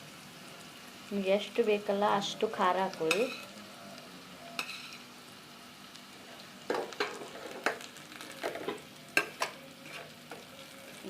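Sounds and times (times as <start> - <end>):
food sizzling in a pan: 0.0 - 11.0
spoon scraping and knocking pan: 6.7 - 7.8.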